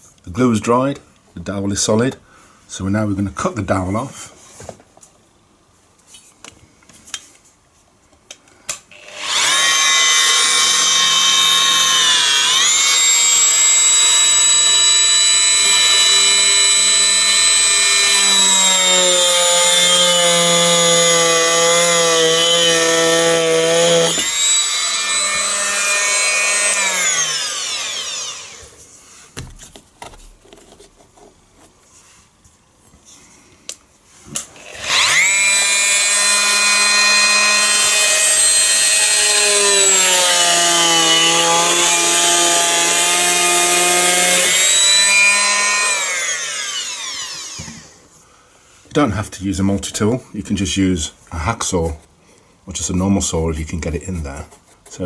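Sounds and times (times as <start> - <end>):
oscillating multi-tool cutting wood: 8.9 - 28.8, 34.4 - 48.0.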